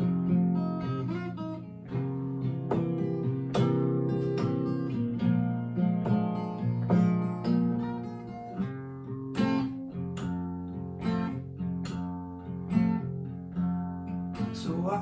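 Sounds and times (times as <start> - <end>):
acoustic guitar blues: 0.0 - 15.0.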